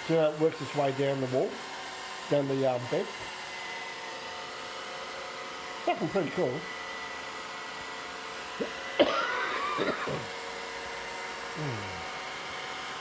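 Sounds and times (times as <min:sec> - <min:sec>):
robot vacuum cleaner humming: 0:05.6 - 0:13.0.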